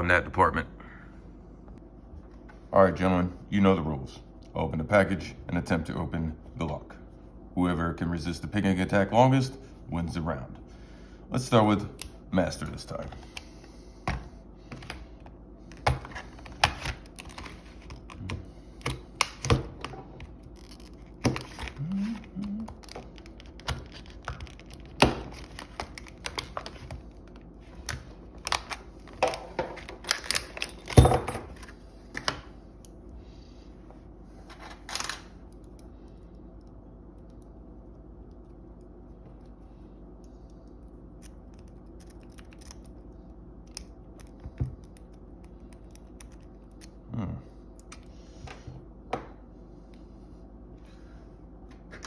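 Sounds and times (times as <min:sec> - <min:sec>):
faint steady hum: 0:00.0 - 0:52.0
plastic packaging crinkling and snapping: 0:20.3 - 0:30.7.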